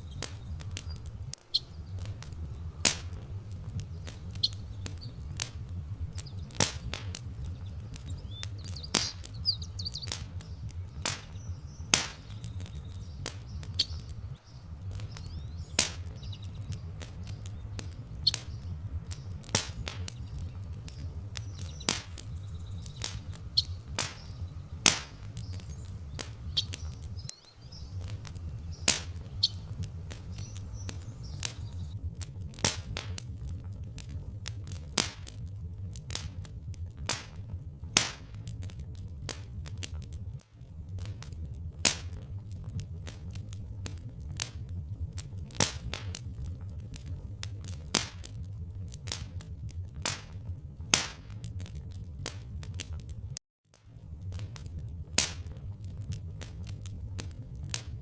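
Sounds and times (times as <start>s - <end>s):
faint bird chirps: 0.0s - 32.0s
wood fire crackling and popping: 0.0s - 58.0s.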